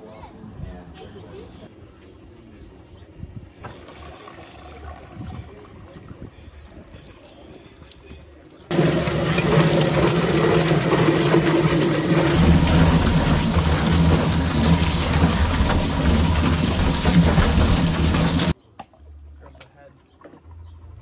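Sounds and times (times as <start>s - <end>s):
motor humming: 8.7s - 18.5s
rushing spraying water: 8.7s - 18.6s.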